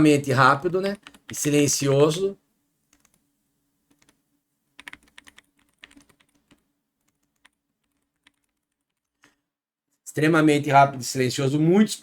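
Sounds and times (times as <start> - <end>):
soft keyboard keystrokes: 0.6 - 1.5, 2.9 - 3.2, 3.9 - 4.2, 4.8 - 9.4.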